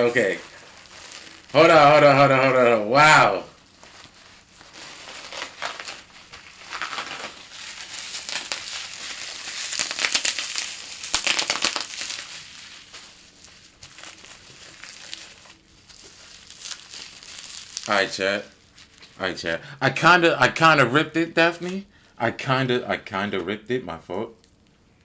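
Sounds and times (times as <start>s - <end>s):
packaging wrap crinkling: 0.0s - 19.3s.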